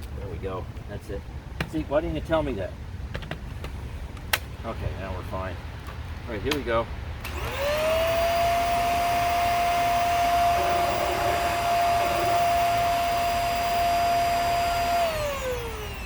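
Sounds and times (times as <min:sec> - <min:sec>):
vacuum cleaner motor whining: 0:07.3 - 0:16.0.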